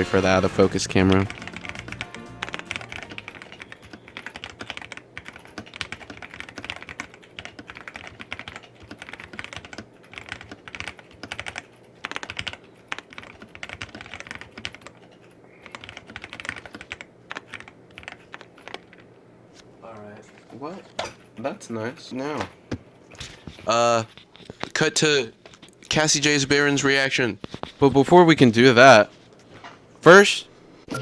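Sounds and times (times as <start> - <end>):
mechanical keyboard typing: 0.9 - 19.0.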